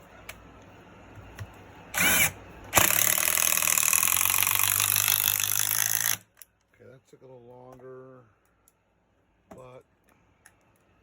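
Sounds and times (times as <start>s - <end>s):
impact driver spin-up whine: 1.9s - 6.2s.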